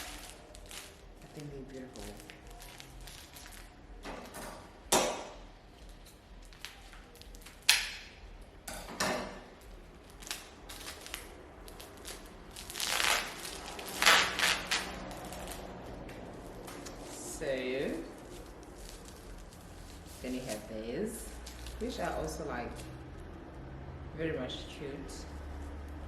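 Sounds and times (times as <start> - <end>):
dried grass rustling and crinkling: 0.0 - 4.0, 9.6 - 23.3.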